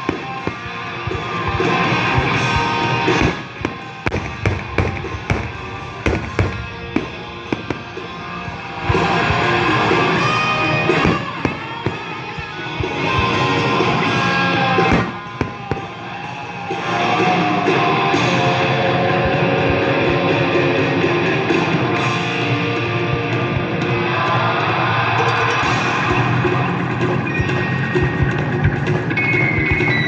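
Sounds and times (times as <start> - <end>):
fireworks bangs: 0.0 - 15.9
rock music with electric guitar: 0.0 - 30.0.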